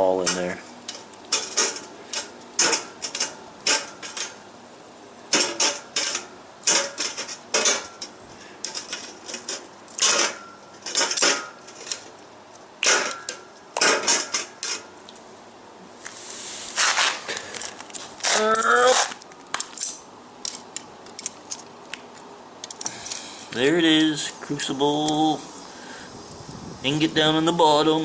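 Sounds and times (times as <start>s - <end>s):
brief hiss: 16.0s - 17.2s.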